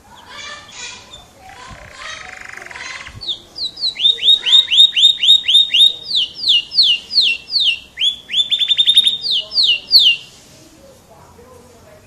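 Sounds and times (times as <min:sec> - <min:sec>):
canary singing whistled notes: 0:00.1 - 0:10.3.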